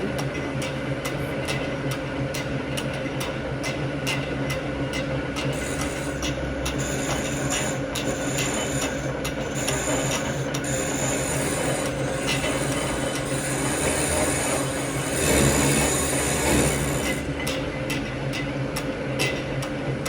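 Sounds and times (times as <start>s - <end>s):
cutting tool scraping metal: 5.5s - 17.3s
lathe humming: 5.5s - 17.5s.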